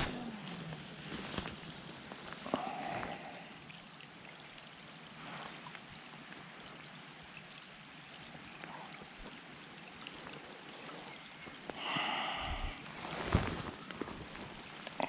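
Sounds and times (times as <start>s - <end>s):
light rain pattering: 0.0s - 15.0s
rustling with low bumps: 12.5s - 15.0s.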